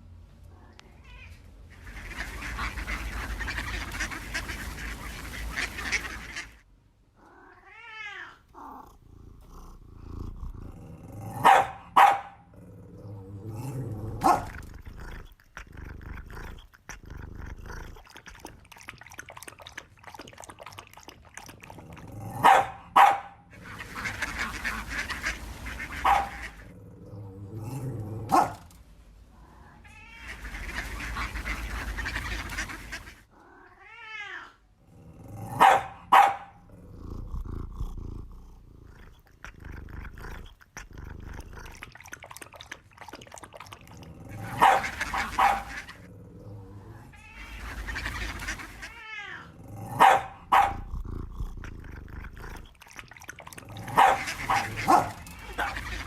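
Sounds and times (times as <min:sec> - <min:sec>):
washes of noise: 0:01.7 - 0:06.6, 0:23.6 - 0:26.8, 0:30.1 - 0:33.3, 0:41.3 - 0:46.1, 0:47.2 - 0:49.0, 0:52.5 - 0:56.0
curving animal call: 0:44.3 - 0:49.6, 0:53.7 - 0:56.0.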